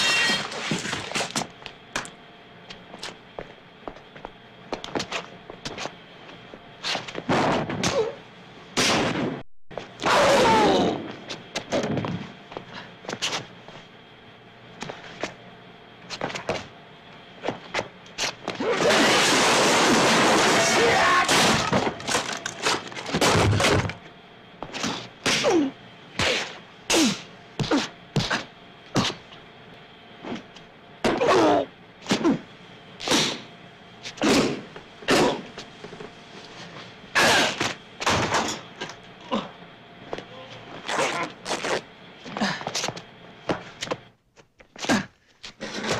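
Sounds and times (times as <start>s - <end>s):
crash of breaking and rattling: 18.7s - 23.9s.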